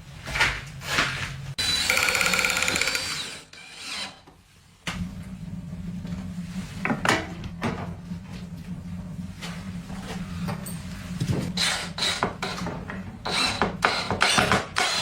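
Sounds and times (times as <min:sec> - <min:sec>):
low steady hum: 0:04.3 - 0:13.3.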